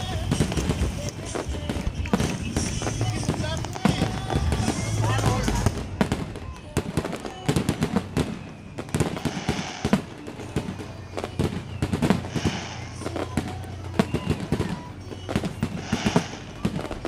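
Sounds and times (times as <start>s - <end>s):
fireworks bangs and booms: 0.0s - 17.0s.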